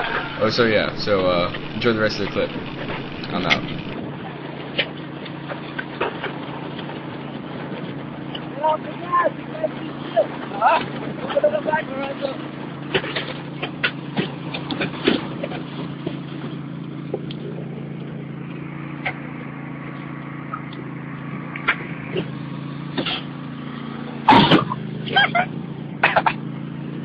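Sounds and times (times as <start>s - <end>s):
loud sudden burst: 0.0s - 4.0s
lawn mower engine running: 0.0s - 27.0s.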